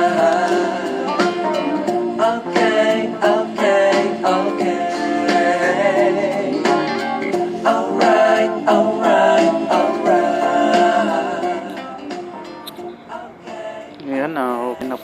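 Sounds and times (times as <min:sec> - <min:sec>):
song with singing over speaker: 0:00.0 - 0:15.0.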